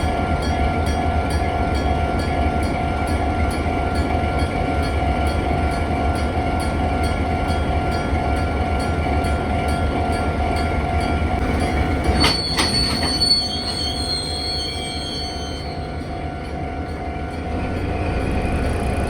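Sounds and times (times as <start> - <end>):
freight train rumbling past: 0.0 - 19.0
wheels clanking over rail joints: 9.9 - 15.3
steel wheel squeal: 11.5 - 16.1.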